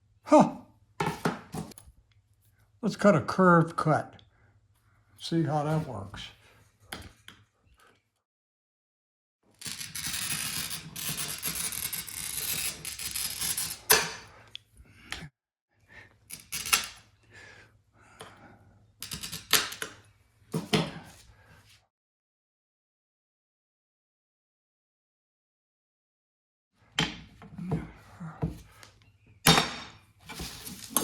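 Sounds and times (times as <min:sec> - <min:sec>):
glass cutter scoring glass: 0:09.7 - 0:14.3.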